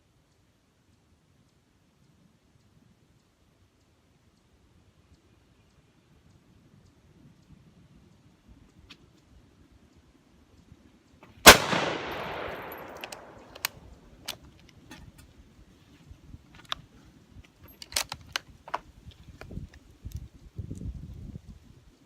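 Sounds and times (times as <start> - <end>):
sharp clicks: 10.6 - 15.0
rifle shot with echo: 11.4 - 13.8.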